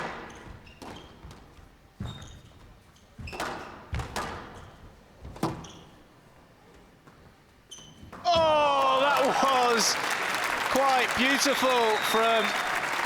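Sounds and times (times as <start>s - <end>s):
shoes squeaking on court: 0.3s - 8.5s.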